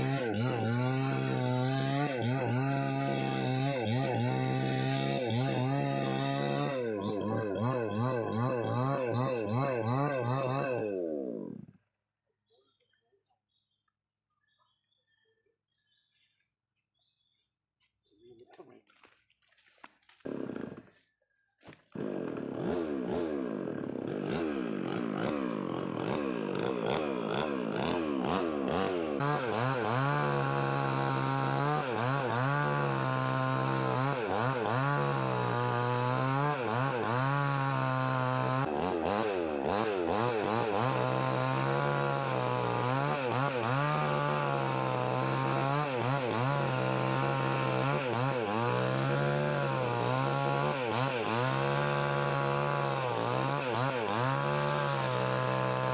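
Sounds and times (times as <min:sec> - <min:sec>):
chainsaw cutting wood: 0:00.0 - 0:11.9, 0:20.1 - 0:55.9.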